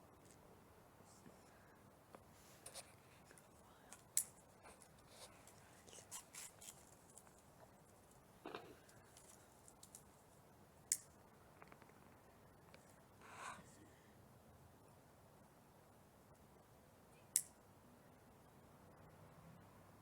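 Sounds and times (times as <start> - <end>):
small objects clicking and rustling: 8.8 - 10.1.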